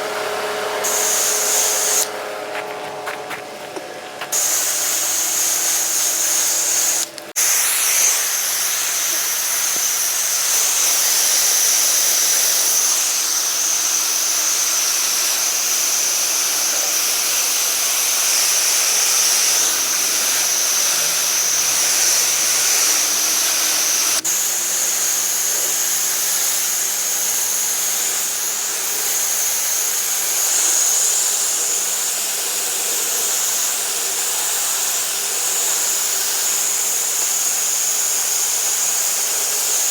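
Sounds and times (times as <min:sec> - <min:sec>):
pressure washer water jet hissing: 0:00.0 - 0:39.9.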